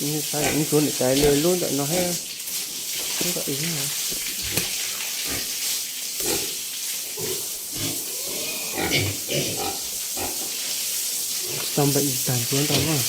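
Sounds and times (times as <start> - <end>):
steady hiss: 0.0 - 13.0
pigs grunting: 0.4 - 2.2, 6.2 - 6.6, 7.2 - 10.6.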